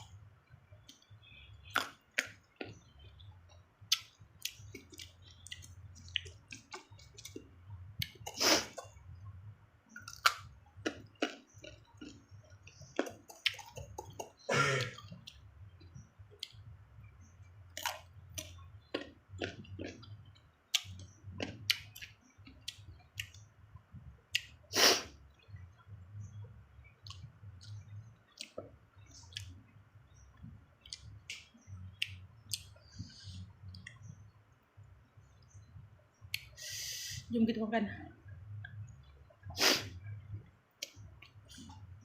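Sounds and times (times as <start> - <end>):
low steady hum: 0.0 - 42.0
wet chewing: 1.7 - 9.0, 9.9 - 15.4, 17.7 - 23.4, 26.9 - 34.1
sharp mouth clicks: 3.9 - 7.4, 10.0 - 15.4, 24.3 - 25.4, 36.3 - 36.8
crunchy bites: 10.0 - 12.2.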